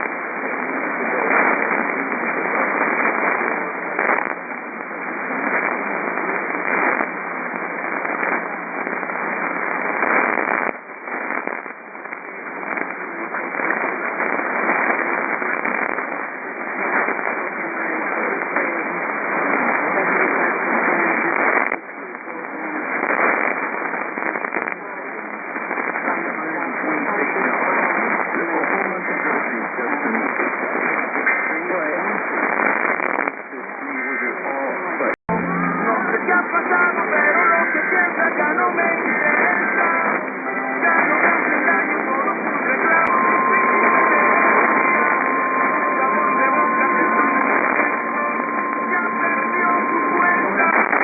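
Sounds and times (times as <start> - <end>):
radio static hiss: 0.0 - 51.0.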